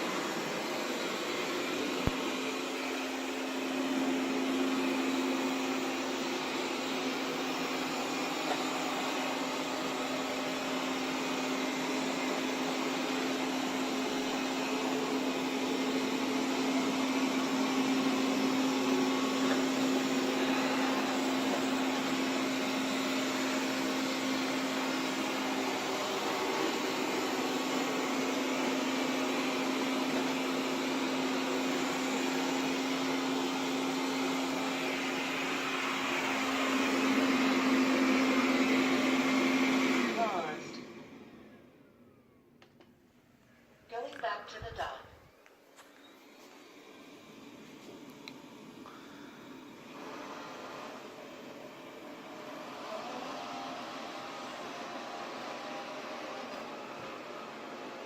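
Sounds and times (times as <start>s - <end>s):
robot vacuum running: 0.0s - 41.4s, 46.3s - 58.0s.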